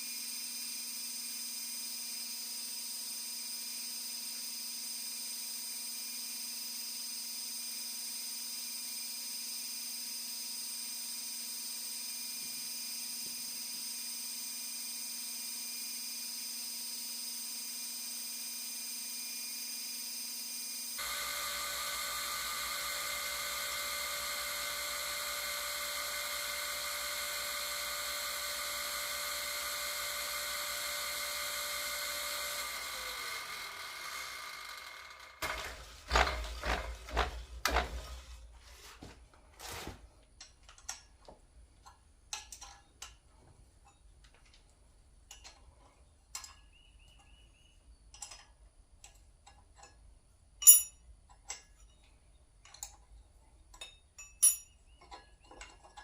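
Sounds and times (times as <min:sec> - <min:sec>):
drill motor drilling metal: 0:00.0 - 0:38.5.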